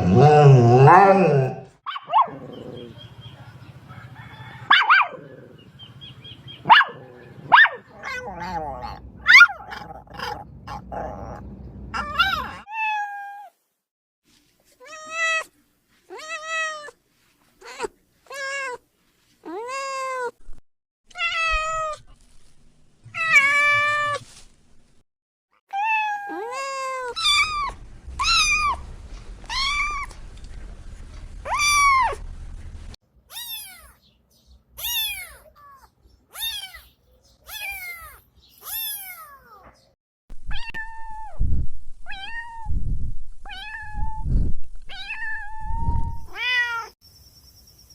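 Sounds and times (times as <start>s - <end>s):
dog whining and yipping: 6.6s - 12.6s, 27.1s - 28.8s, 31.4s - 32.2s
cats meowing: 7.9s - 10.4s, 12.0s - 13.4s, 23.1s - 24.2s, 25.7s - 28.8s, 29.4s - 30.2s, 33.3s - 34.0s, 34.8s - 39.9s, 43.5s - 44.2s, 44.9s - 47.0s.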